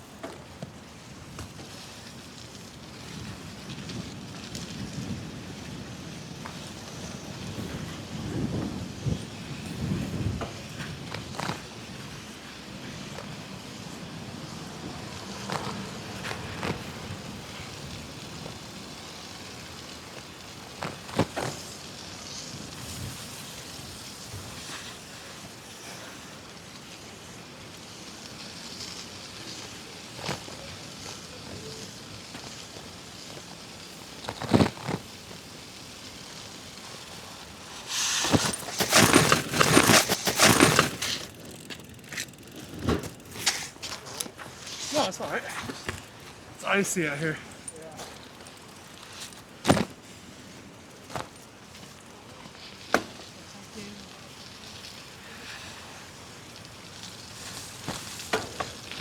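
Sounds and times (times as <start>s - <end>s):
bicycle tyre noise: 0.0s - 59.0s.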